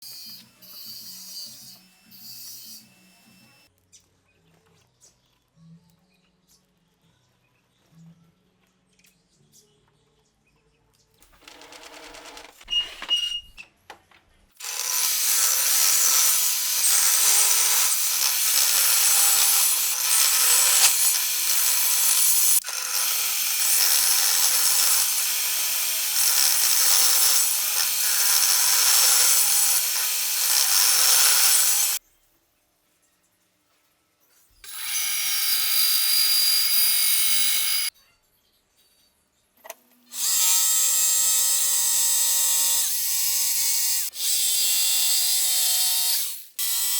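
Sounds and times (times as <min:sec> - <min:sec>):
power tool cutting wood: 0:00.0 - 0:03.7, 0:14.6 - 0:32.0, 0:34.6 - 0:37.9, 0:40.1 - 0:46.9
short high squeak: 0:12.7 - 0:13.7.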